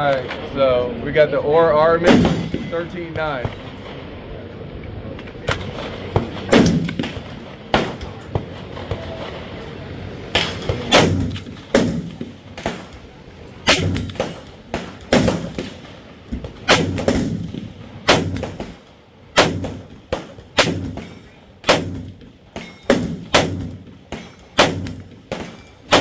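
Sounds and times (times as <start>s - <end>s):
rifle shots: 2.0s - 2.7s, 5.4s - 9.6s, 10.3s - 26.0s.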